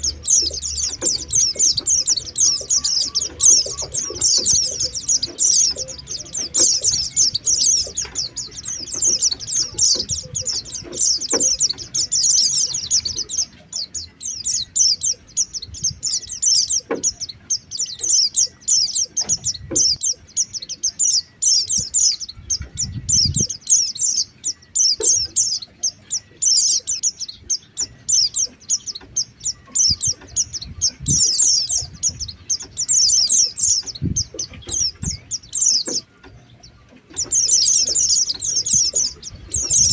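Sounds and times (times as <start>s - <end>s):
white-eyes twittering: 0.0s - 13.5s.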